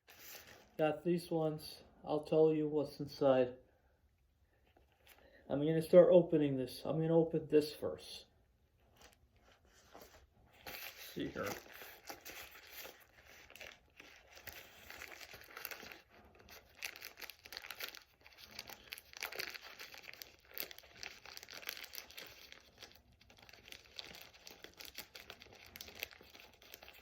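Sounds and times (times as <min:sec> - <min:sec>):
package wrapping crinkling and tearing: 0:00.0 - 0:00.8, 0:08.8 - 0:27.0.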